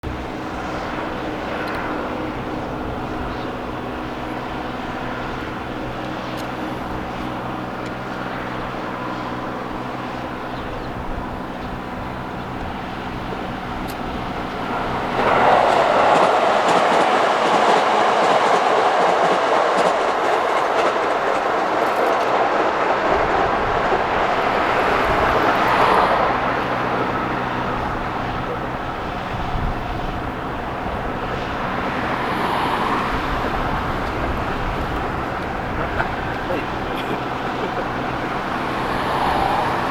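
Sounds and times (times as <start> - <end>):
wheels rolling on rail: 0.1 - 39.9
locomotive hum with low tones: 20.3 - 39.9.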